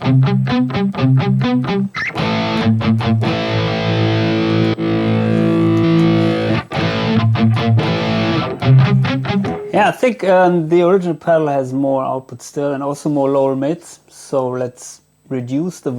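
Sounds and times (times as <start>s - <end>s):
distorted electric guitar riff: 0.0s - 9.9s.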